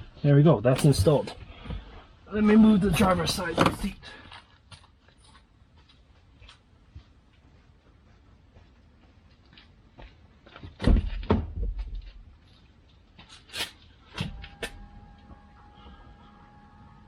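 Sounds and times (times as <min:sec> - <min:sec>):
heavy knocks and thuds: 0:10.8 - 0:12.1
electric seat motor whine: 0:14.2 - 0:17.0.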